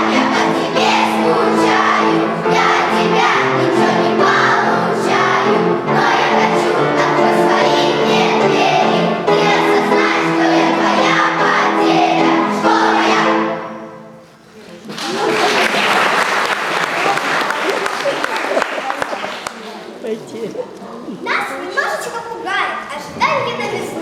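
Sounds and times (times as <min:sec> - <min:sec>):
children singing together: 0:00.0 - 0:14.1
musical backing track: 0:00.0 - 0:14.4.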